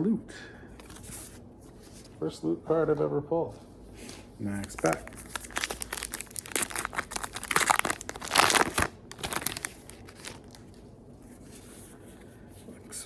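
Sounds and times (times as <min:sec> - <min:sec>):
plastic wrapper tearing and crinkling: 0:04.6 - 0:10.8.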